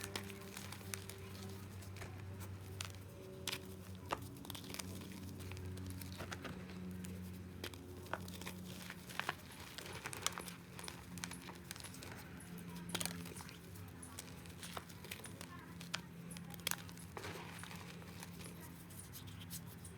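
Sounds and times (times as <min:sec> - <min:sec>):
chalk crunching and crackling: 0:00.0 - 0:19.9.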